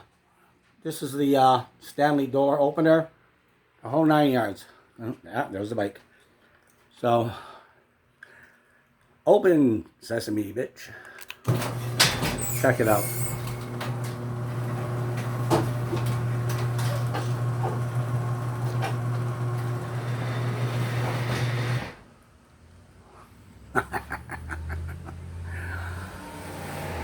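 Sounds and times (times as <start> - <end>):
garage door opener motor humming: 11.5 - 22.2.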